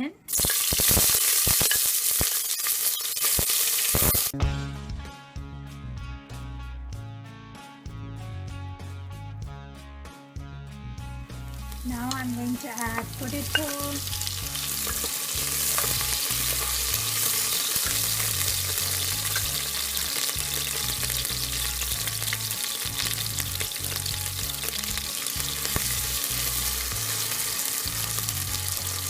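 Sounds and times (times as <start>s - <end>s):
potatoes sizzling in hot oil: 0.3s - 4.4s, 11.5s - 29.0s.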